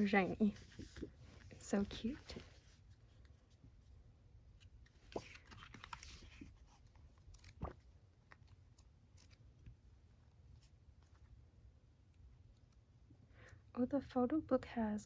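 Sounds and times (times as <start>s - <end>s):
paper or plastic rustle: 4.9s - 9.4s.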